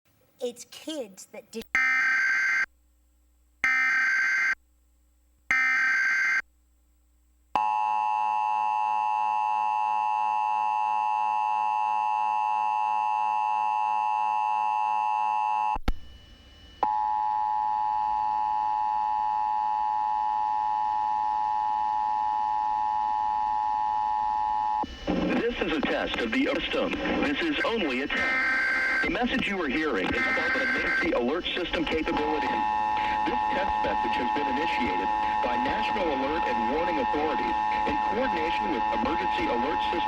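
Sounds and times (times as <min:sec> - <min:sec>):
screechy digital data bursts: 0:26.0 - 0:40.0.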